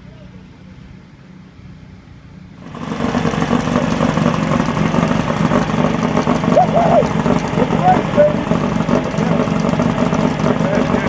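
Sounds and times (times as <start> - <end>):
race vehicle engine running: 2.6 - 11.0.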